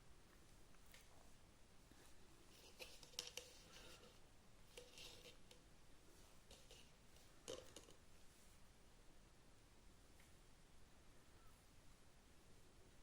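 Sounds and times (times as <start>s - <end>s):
faint clicks and rustles: 0.2s - 8.6s.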